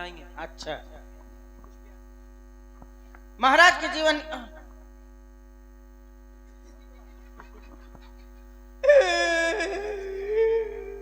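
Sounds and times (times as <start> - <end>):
mains hum: 0.0 - 11.0
voice holding a wavering note: 8.8 - 11.0.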